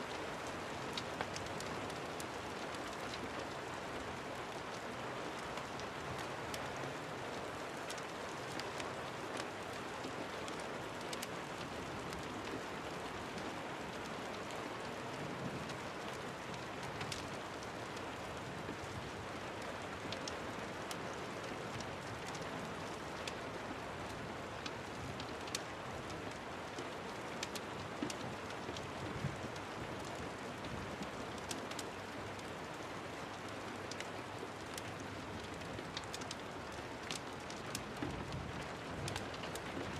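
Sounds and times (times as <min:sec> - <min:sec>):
steady rain: 0:00.0 - 0:39.9
fireplace crackling: 0:24.1 - 0:31.9, 0:33.3 - 0:38.4.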